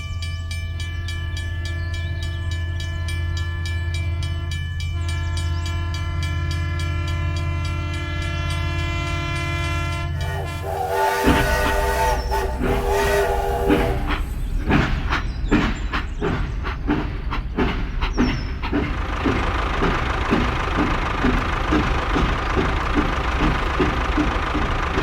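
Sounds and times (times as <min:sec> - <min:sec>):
train clacking on rails: 0:00.0 - 0:25.0
train horn: 0:05.0 - 0:14.5.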